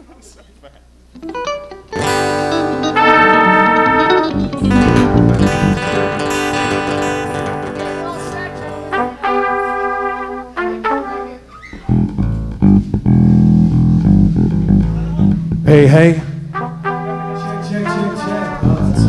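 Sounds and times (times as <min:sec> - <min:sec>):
band instruments playing notes: 0:01.2 - 0:19.0
loud low bass notes: 0:02.0 - 0:08.9, 0:11.8 - 0:17.2, 0:18.6 - 0:19.0.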